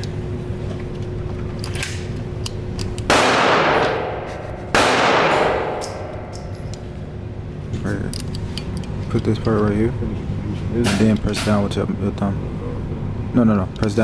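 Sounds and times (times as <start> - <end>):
echoing gunshots indoors: 3.1 - 7.5.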